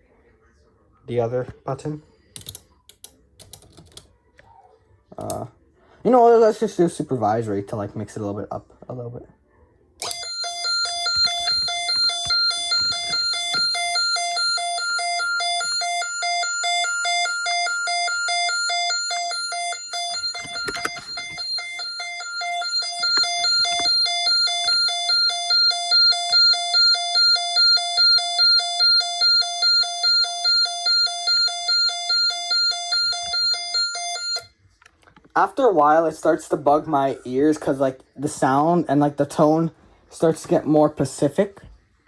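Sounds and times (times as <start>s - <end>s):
pulsing electronic alarm tone: 10.0s - 34.5s.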